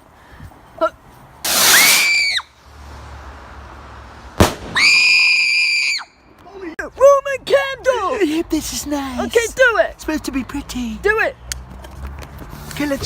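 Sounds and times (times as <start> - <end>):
firework hissing whistle: 1.4 - 2.5, 4.7 - 6.0
firework bang: 1.5 - 2.2, 4.4 - 5.3
high-pitched firework whistle: 1.5 - 2.5, 4.7 - 6.1.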